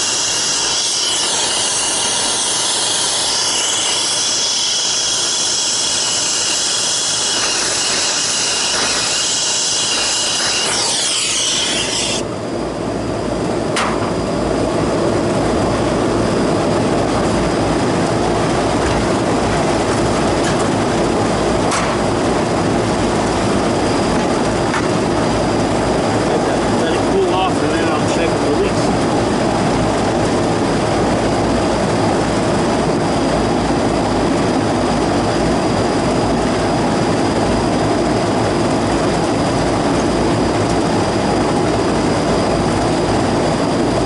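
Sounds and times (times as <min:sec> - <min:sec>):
brazing torch hissing: 0:00.0 - 0:12.2
machine humming: 0:00.0 - 0:44.0.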